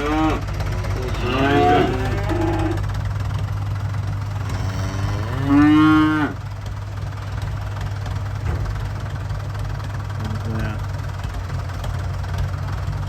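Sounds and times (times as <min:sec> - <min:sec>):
calves bawling: 0:00.0 - 0:03.1, 0:03.8 - 0:06.6, 0:10.2 - 0:10.9
steady low hum: 0:00.0 - 0:13.0.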